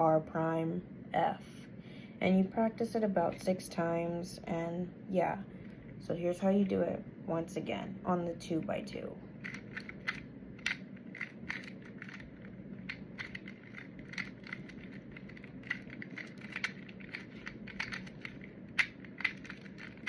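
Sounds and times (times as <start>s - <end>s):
puzzle cube clicking: 9.4s - 20.0s.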